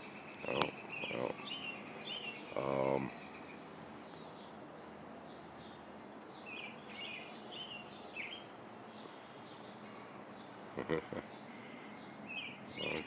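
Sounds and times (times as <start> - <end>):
small songbirds chirping: 0.0 - 13.0
steady background hiss: 0.0 - 13.0.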